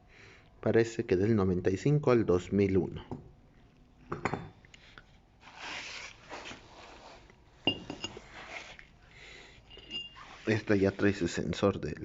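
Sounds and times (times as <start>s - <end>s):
rustling: 4.8s - 9.0s
metal clinks and scraping: 7.6s - 8.5s, 9.6s - 11.0s.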